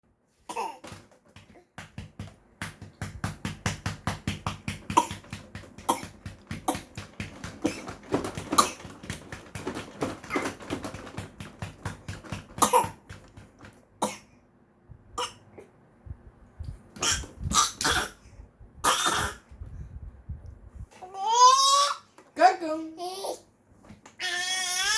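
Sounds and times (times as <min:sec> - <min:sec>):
baby coughing: 0:00.5 - 0:00.9, 0:04.9 - 0:07.0, 0:08.5 - 0:08.9, 0:12.6 - 0:13.1, 0:14.0 - 0:14.3, 0:15.2 - 0:15.7, 0:17.0 - 0:18.2, 0:18.8 - 0:19.4.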